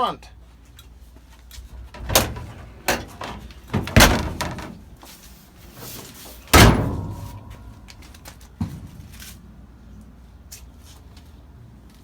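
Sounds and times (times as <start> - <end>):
thuds and knocks: 1.7 - 5.1, 6.5 - 7.9.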